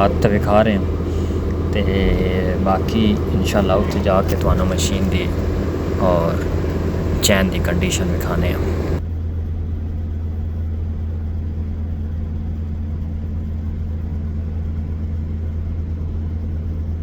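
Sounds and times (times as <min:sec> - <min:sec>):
vehicle engine and road noise: 0:00.0 - 0:12.3.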